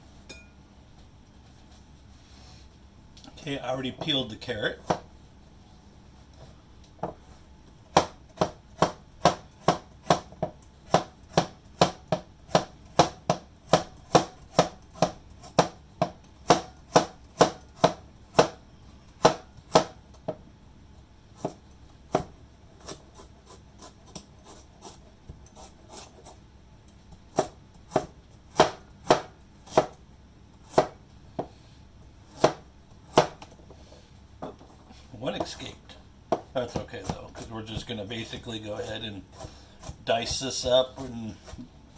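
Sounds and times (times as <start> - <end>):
knife slicing carrot on board: 21.4 - 26.4, 27.3 - 30.0, 30.6 - 31.6, 32.2 - 33.6.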